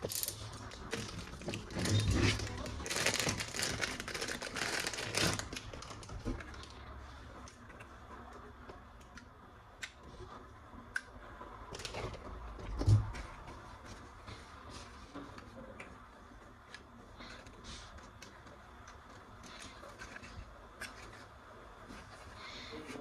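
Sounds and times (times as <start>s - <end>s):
plastic toy parts clicking: 0.0s - 1.8s.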